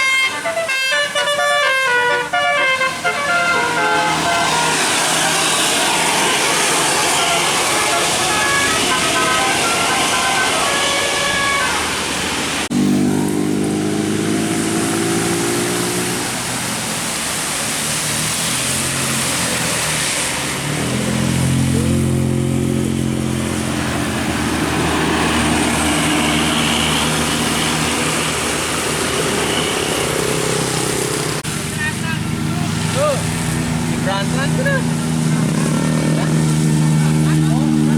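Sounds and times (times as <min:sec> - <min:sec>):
diesel engine running: 0:01.2 - 0:15.5, 0:16.2 - 0:37.9
rising engine whine: 0:20.0 - 0:37.9.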